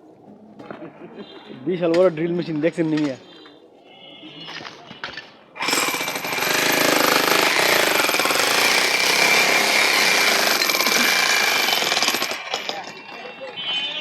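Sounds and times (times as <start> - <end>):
jackhammer breaking concrete: 5.6 - 13.2.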